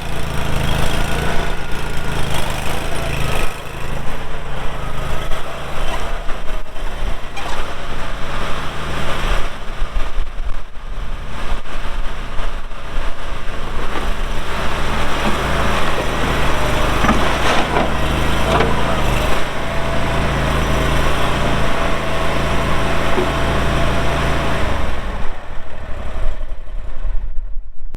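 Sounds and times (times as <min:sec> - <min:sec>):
steady whine: 0:00.0 - 0:26.0
gas engine running: 0:00.0 - 0:27.1
scattered knocks: 0:13.8 - 0:24.4.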